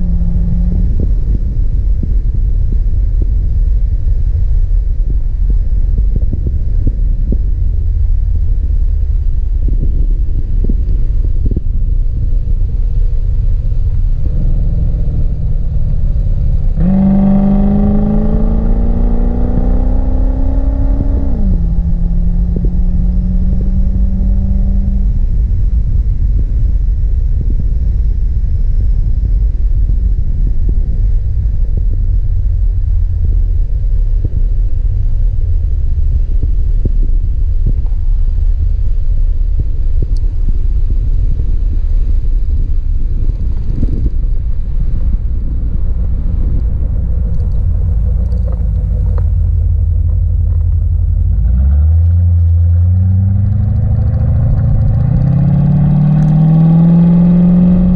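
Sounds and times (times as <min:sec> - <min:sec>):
car engine accelerating: 0:00.0 - 0:05.0, 0:08.5 - 0:30.0, 0:43.2 - 0:57.9
wind and road noise rumble: 0:00.0 - 0:57.9.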